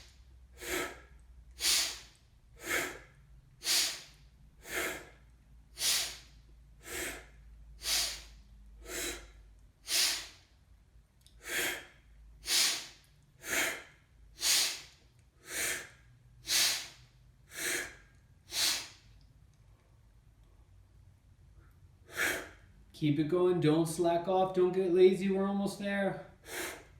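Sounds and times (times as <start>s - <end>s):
forceful rhythmic breathing: 0.0s - 10.6s, 11.2s - 20.0s, 21.5s - 22.9s, 26.3s - 26.9s.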